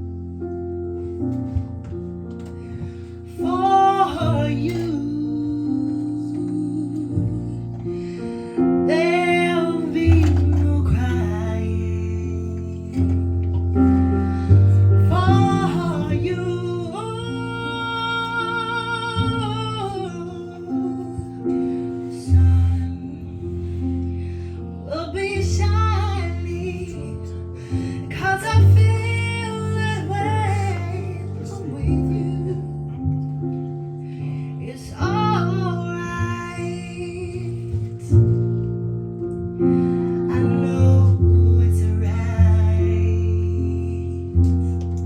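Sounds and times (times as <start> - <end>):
sustained low bass notes: 0.0 - 45.0
woman singing with vibrato: 3.3 - 7.7, 15.0 - 21.3, 28.1 - 32.8.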